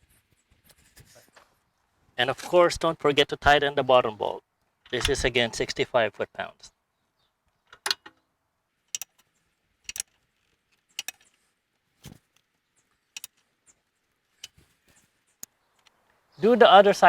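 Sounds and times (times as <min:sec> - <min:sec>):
ratchet wrench clicking: 0:09.9 - 0:10.1, 0:10.9 - 0:11.3.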